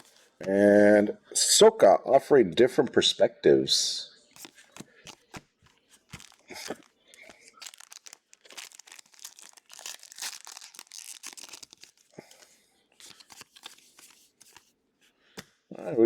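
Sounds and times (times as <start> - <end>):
foil wrapper tearing and crinkling: 6.0 - 12.5.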